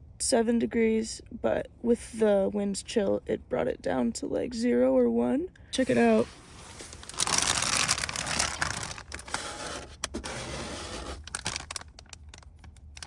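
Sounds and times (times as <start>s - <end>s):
irregular scratching and scraping: 8.2s - 11.7s.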